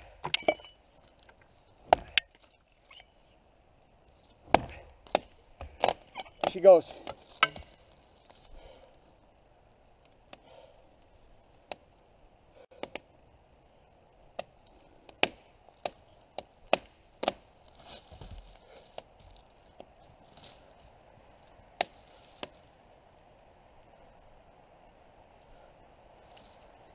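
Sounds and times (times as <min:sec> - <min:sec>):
tree trunk wood cracking: 0:00.0 - 0:02.9, 0:04.4 - 0:09.0, 0:14.4 - 0:22.7.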